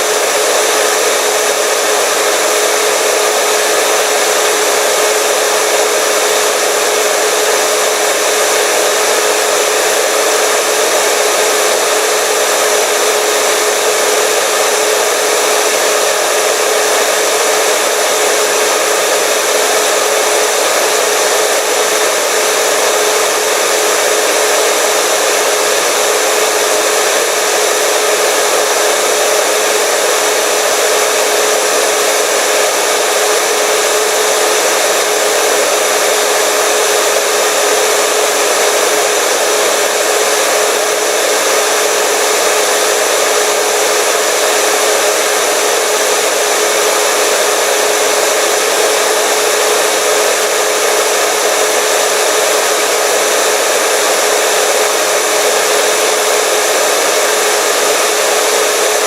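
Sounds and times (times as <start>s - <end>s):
electric hair dryer running: 0.0s - 59.0s.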